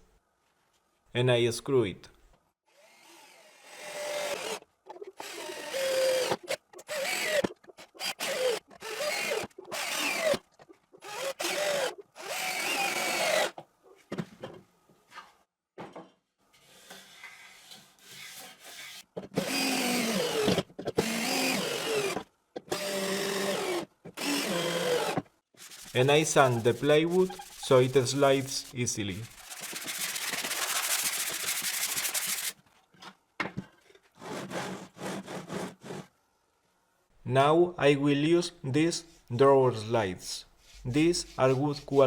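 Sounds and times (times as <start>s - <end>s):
power drill driving screws: 2.9s - 4.6s, 5.2s - 10.4s, 11.0s - 13.6s, 18.8s - 25.2s.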